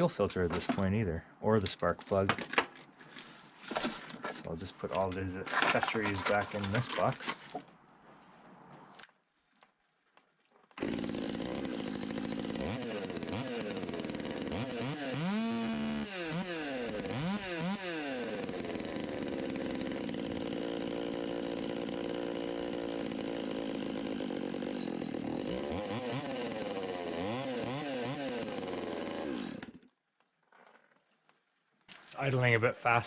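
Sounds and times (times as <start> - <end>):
chainsaw revving and idling: 10.8 - 29.8.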